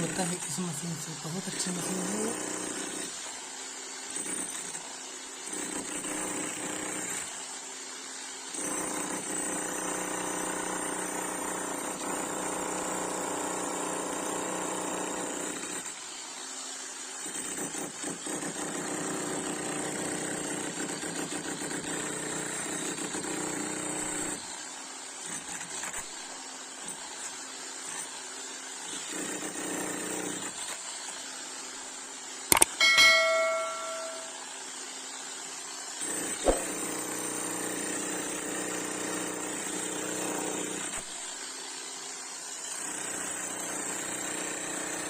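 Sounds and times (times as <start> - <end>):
demolition hammer breaking concrete: 29.0 - 30.6.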